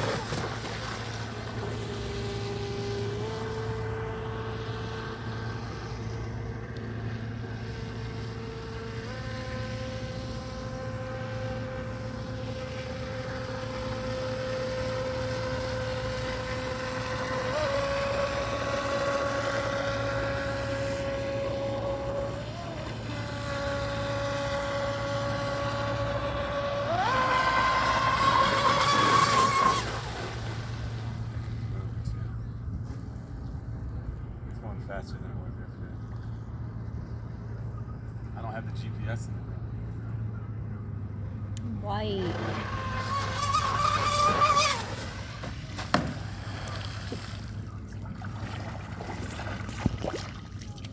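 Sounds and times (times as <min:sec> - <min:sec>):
toy speedboat motor whining: 0:00.0 - 0:32.5, 0:41.6 - 0:48.4.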